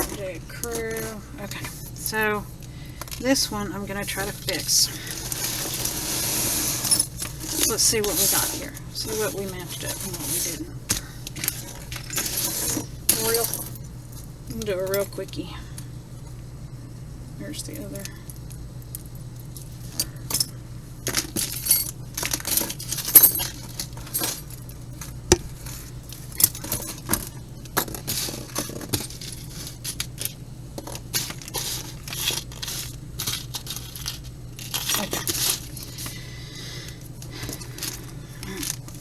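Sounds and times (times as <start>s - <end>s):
steady low hum: 0.0s - 39.0s
jewelry clinking on a table: 11.5s - 13.8s, 32.2s - 36.0s.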